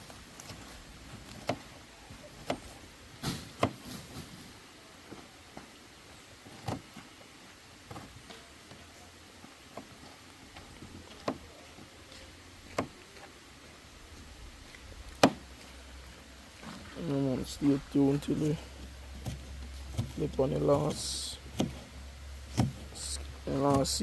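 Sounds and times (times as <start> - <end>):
low background noise: 0.0 - 24.0
utensils knocking and clicking: 19.2 - 21.9.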